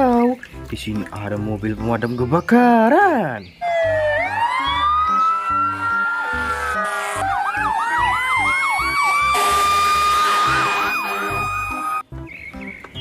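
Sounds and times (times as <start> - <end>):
fast siren yelp: 3.6 - 12.0
fire engine sirens wailing: 3.6 - 12.0.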